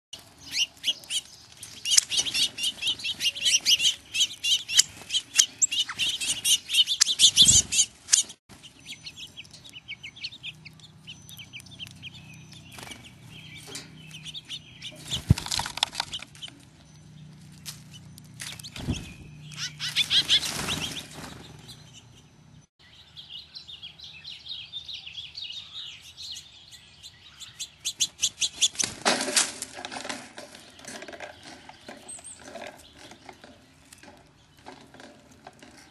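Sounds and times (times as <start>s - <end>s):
wings flapping: 0.2s - 9.4s, 11.8s - 16.7s, 17.4s - 21.9s, 27.9s - 31.6s
small birds chirping: 0.2s - 29.1s, 29.7s - 35.9s.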